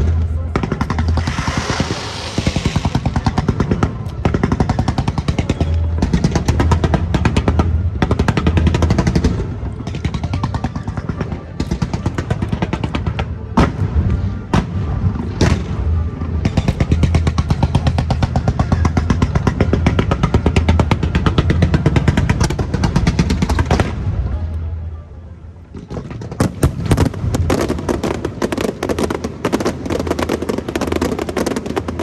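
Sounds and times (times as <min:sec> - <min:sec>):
sharp bangs: 0:00.0 - 0:24.3.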